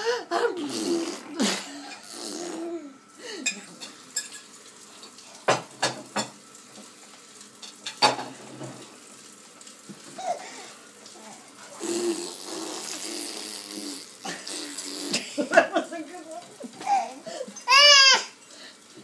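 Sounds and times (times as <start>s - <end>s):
dishes and cutlery clinking: 3.4s - 6.9s, 7.6s - 8.9s.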